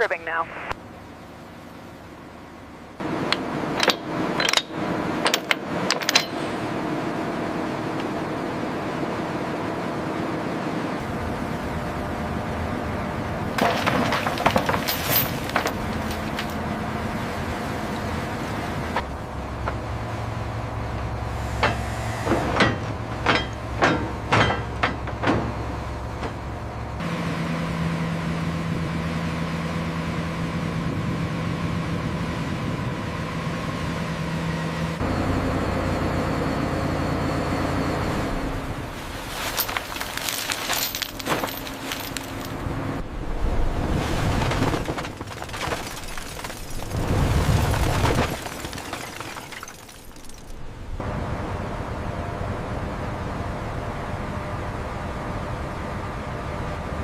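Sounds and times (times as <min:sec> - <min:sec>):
heavy machinery humming: 0:00.0 - 0:45.6
sharp clanks and knocks: 0:03.3 - 0:06.5, 0:13.6 - 0:16.6, 0:21.6 - 0:26.4, 0:39.3 - 0:42.6.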